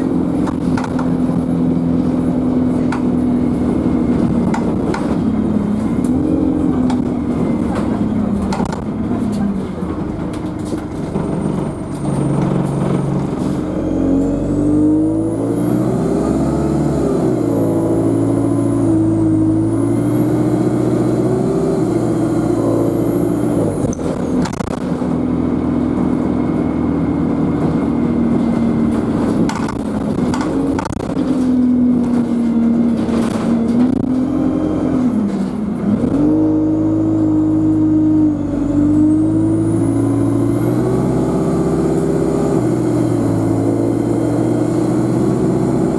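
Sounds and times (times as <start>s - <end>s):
diesel bus engine: 0.0s - 45.9s
turbocharger whine: 33.2s - 45.9s.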